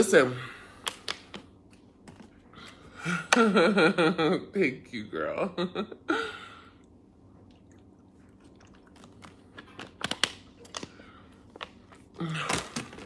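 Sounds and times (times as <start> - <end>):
person chewing crunchy food: 7.4 - 12.2.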